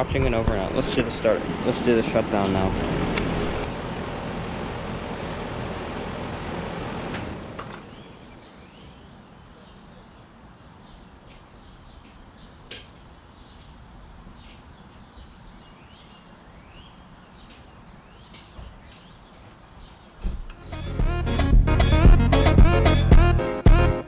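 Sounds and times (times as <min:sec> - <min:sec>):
air conditioner unit humming: 0:00.0 - 0:09.4
shut-off clicks: 0:02.4 - 0:07.9
birds chirping: 0:04.8 - 0:06.4, 0:07.6 - 0:21.2.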